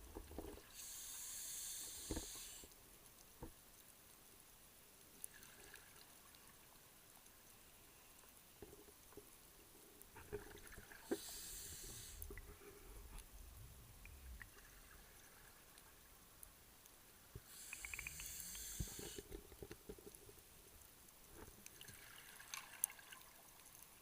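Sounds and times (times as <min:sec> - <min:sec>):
faint clicks: 0:01.8 - 0:13.4, 0:15.7 - 0:23.0.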